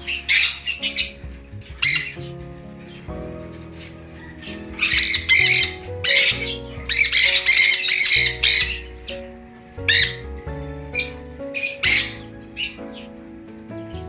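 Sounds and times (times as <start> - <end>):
background music: 0.0 - 14.0
parrots screeching: 3.8 - 9.2.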